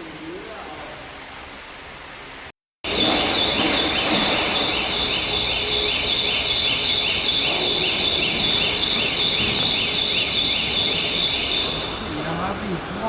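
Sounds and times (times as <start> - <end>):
cicadas singing: 2.9 - 13.0.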